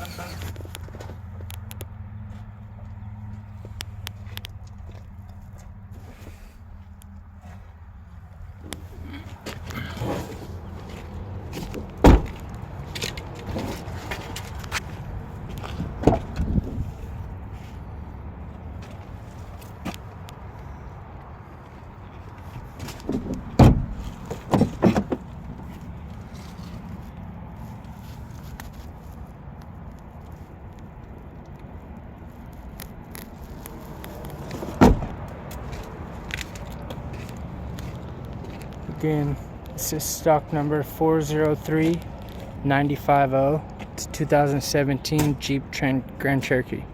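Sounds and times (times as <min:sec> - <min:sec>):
car door thump: 0:11.6 - 0:12.4, 0:15.9 - 0:16.7, 0:23.1 - 0:25.2, 0:34.6 - 0:35.2.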